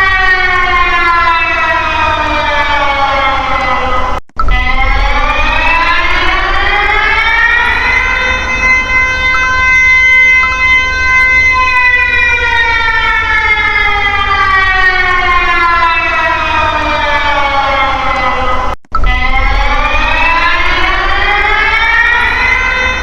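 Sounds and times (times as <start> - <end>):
warning siren wailing: 0.0 - 23.0.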